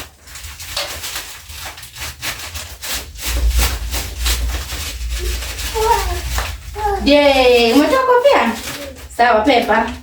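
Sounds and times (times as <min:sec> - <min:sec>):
rough rhythmic scraping: 0:00.0 - 0:10.0
low rumble: 0:02.9 - 0:07.8.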